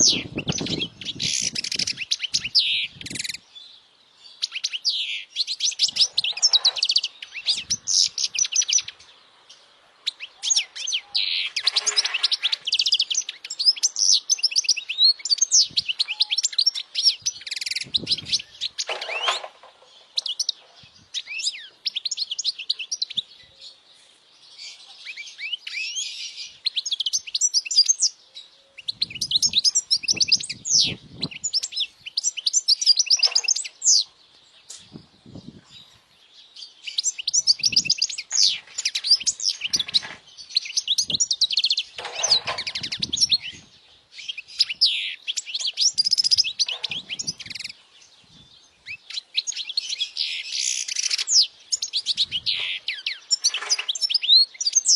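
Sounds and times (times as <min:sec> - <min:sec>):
bird twittering and trilling: 0:00.0 - 0:54.9.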